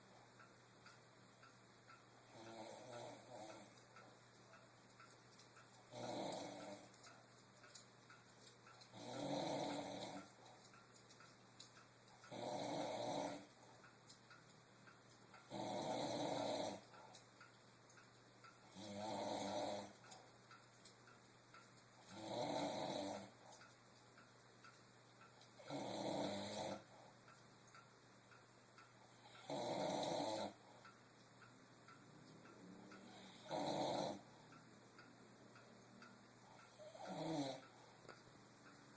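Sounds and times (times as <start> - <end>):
person snoring: 2.2 - 3.7, 5.9 - 6.9, 8.9 - 10.3, 12.3 - 13.5, 15.5 - 16.8, 18.7 - 20.0, 22.1 - 23.4, 25.6 - 26.9, 29.2 - 30.7, 32.6 - 34.3, 36.6 - 37.8.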